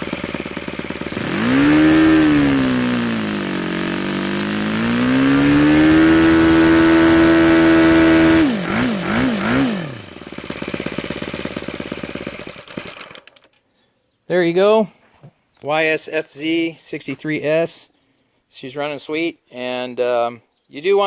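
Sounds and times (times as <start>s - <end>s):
model aircraft engine revving: 0.0s - 13.5s.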